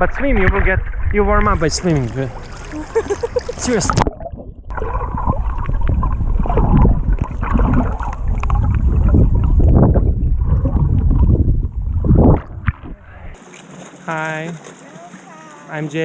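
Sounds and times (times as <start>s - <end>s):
water splashing and sloshing: 0.0s - 16.0s
wind buffeting microphone: 4.7s - 13.4s.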